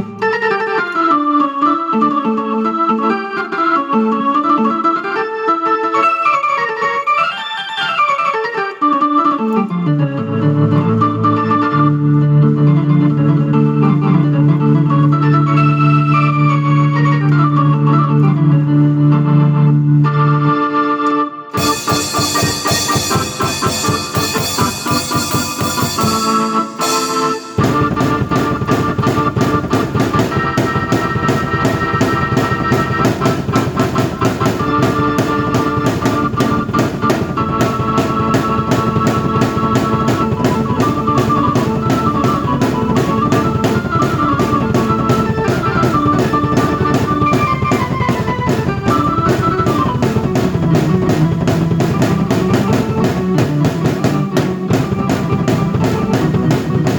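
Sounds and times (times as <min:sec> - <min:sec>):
keyboard melody: 0:00.0 - 0:56.9
drum kit beat: 0:21.6 - 0:56.9.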